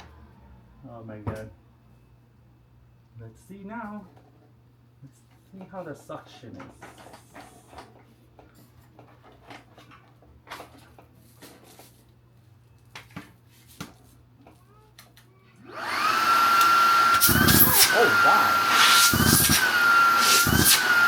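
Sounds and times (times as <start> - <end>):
vacuum cleaner motor whine: 15.6 - 21.0.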